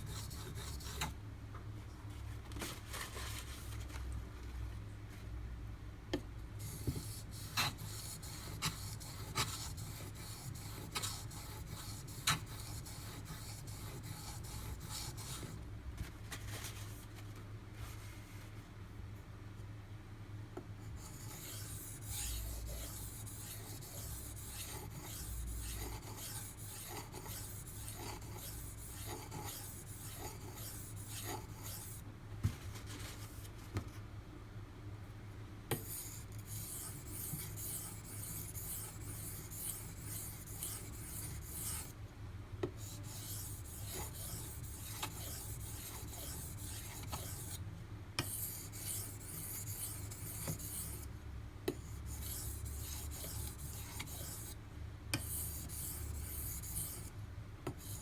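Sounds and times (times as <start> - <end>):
steady low hum: 0.0 - 58.0
knife scraping on whetstone: 21.0 - 32.0, 35.8 - 41.9, 42.8 - 47.6, 48.2 - 51.0, 51.8 - 54.6, 55.2 - 57.1.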